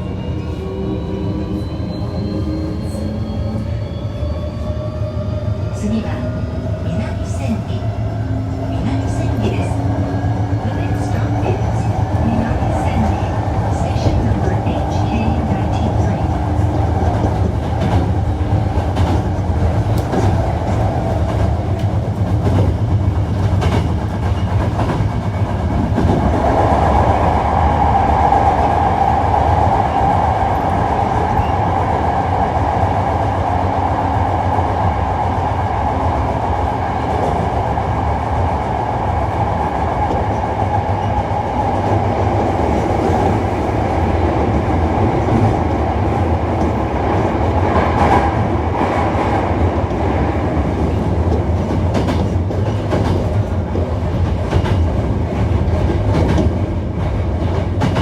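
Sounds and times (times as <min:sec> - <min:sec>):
train wheels rumbling: 0:00.0 - 0:58.0
rail-joint clicks: 0:18.8 - 0:20.4, 0:21.3 - 0:26.2, 0:50.8 - 0:58.0.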